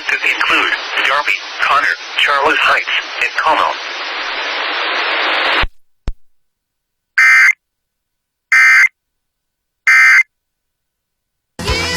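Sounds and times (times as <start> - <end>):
digital data tone bursts: 7.2 - 7.6, 8.5 - 8.9, 9.9 - 10.2.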